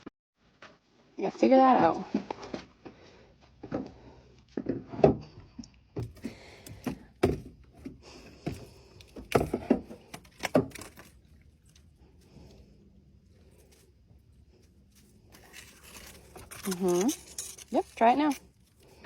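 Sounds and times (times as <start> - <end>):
knocks and thumps: 4.6 - 11.0
faint scraping: 8.0 - 19.0.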